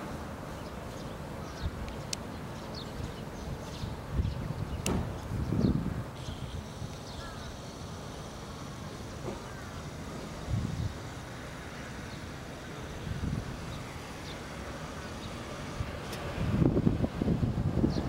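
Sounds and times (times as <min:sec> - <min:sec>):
outdoor background rumble: 0:00.0 - 0:18.0
wind buffeting microphone: 0:02.8 - 0:06.8, 0:10.4 - 0:11.2, 0:13.0 - 0:14.0, 0:15.2 - 0:18.0.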